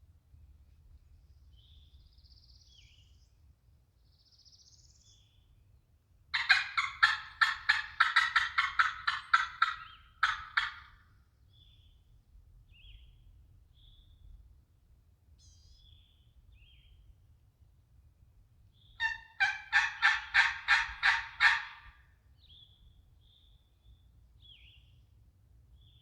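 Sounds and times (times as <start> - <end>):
faint songbird chirps: 1.0 - 3.4, 4.0 - 5.8, 11.4 - 14.4, 15.4 - 17.1, 22.4 - 25.1
turkey yelps: 6.4 - 11.0, 19.0 - 22.0.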